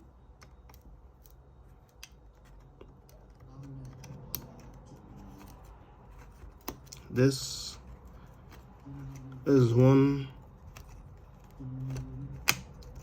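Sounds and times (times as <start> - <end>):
tools clicking inside laptop: 10.6 - 13.0.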